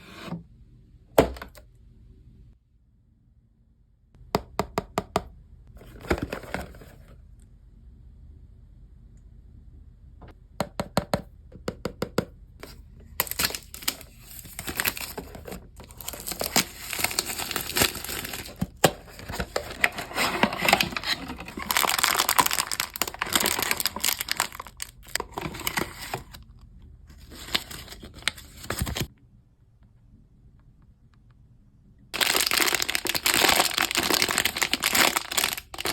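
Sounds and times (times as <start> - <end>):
packaging crinkling and tearing: 13.2 - 26.5, 27.1 - 29.1, 32.2 - 35.9.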